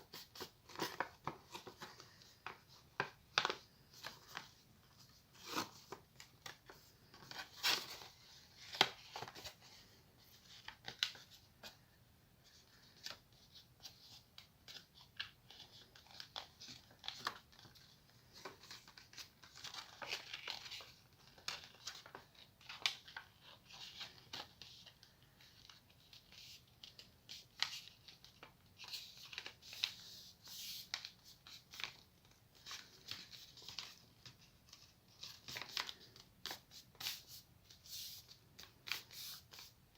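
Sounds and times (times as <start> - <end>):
paper rustling and crackling: 12.7 - 39.8.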